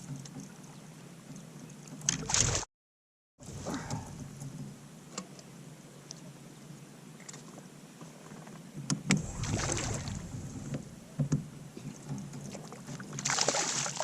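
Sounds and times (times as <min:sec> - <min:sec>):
water sounds: 0:03.4 - 0:06.4, 0:09.1 - 0:14.0.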